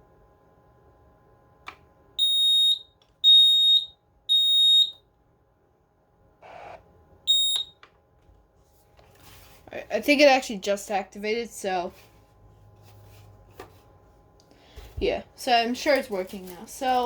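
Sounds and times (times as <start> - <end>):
smoke alarm beeps: 2.2 - 5.0, 7.3 - 7.8.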